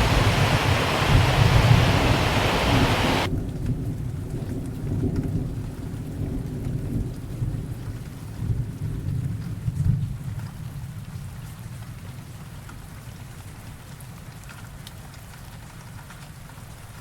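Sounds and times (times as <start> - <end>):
waterfall rushing hiss: 0.0 - 3.3.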